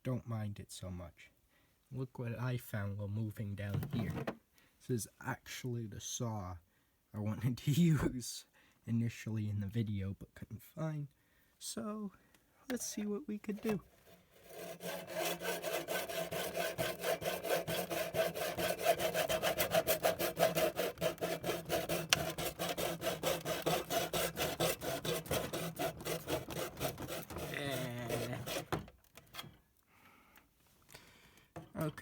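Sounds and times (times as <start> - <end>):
hand saw cutting plastic: 13.5 - 29.5.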